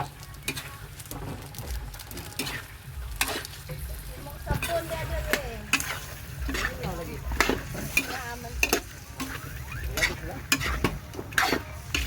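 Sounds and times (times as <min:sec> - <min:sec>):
frying sizzle: 0:00.0 - 0:12.0
utensil scraping metal pan: 0:02.3 - 0:03.8, 0:04.5 - 0:12.0.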